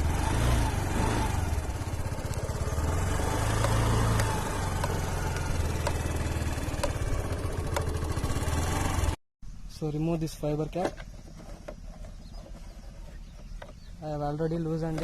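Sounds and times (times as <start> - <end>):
scooter engine idling: 0.0 - 9.2.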